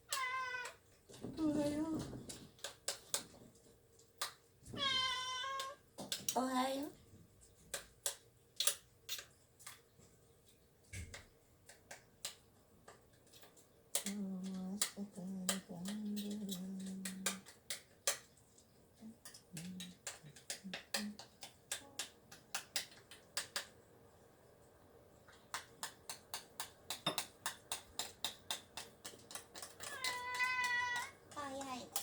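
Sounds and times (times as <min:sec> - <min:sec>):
cat meowing: 0:00.1 - 0:00.8, 0:04.7 - 0:05.8, 0:29.8 - 0:31.2.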